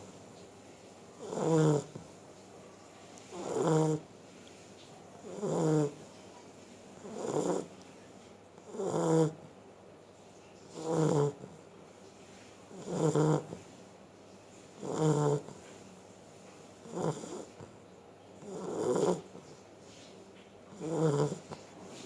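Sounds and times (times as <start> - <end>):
dog snoring: 1.2 - 2.1, 3.3 - 4.1, 5.2 - 6.0, 7.0 - 7.7, 8.6 - 9.4, 10.6 - 11.6, 12.7 - 13.7, 14.8 - 15.6, 16.8 - 17.8, 18.4 - 19.5, 20.7 - 21.7.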